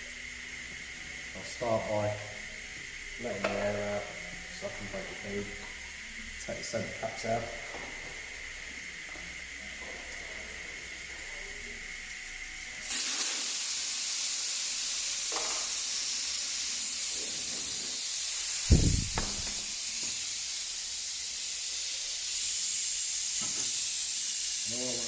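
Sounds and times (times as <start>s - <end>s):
air hissing from tyre valve: 12.8s - 25.0s
dull thump: 18.7s - 19.6s.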